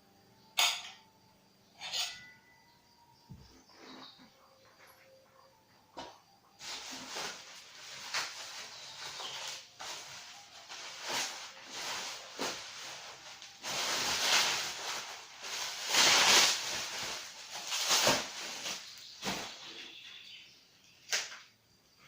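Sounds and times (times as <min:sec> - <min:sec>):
packaging rustling: 0:06.6 - 0:19.7.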